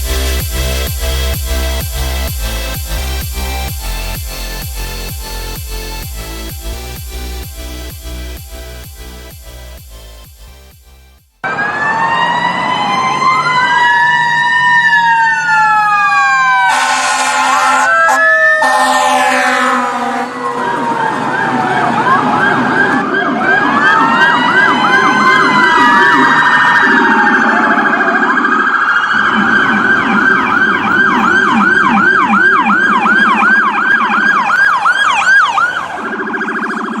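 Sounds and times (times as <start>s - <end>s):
low rapid siren warble: 11.4s - 37.0s
siren wail: 11.4s - 37.0s
siren yelp: 11.4s - 37.0s.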